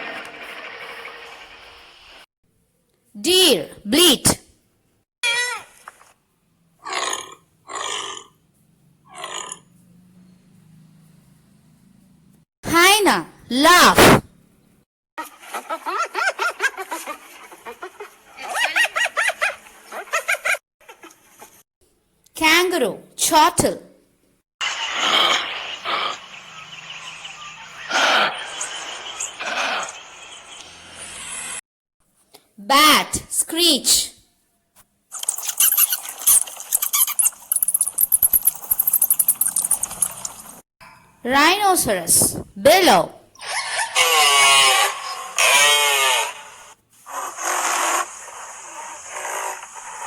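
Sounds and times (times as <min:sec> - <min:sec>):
hyena laughing: 0:15.4 - 0:21.1.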